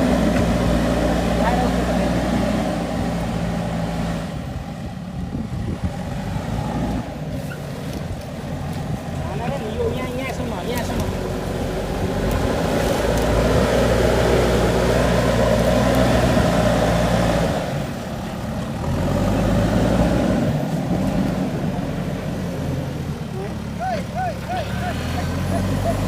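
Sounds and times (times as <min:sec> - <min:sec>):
diesel engine running under load: 0:00.0 - 0:26.0.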